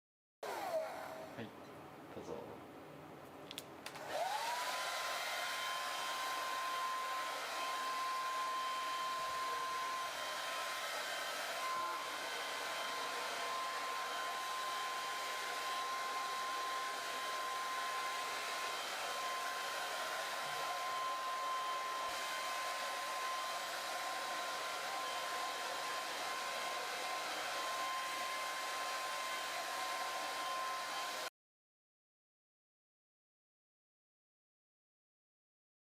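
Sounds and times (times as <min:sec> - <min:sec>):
hair dryer motor whine: 0:00.4 - 0:01.4, 0:03.8 - 0:31.3.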